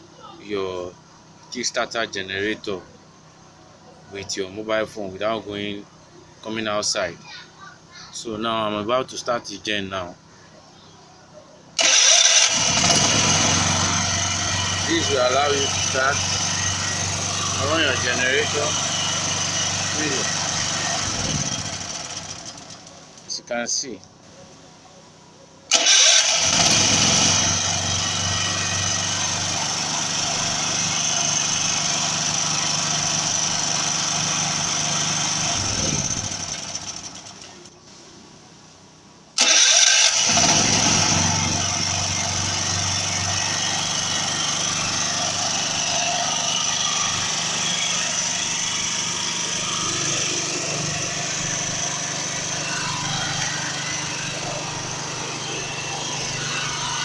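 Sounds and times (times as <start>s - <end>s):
generator engine running: 11.8s - 23.4s, 25.7s - 37.8s, 39.4s - 57.0s.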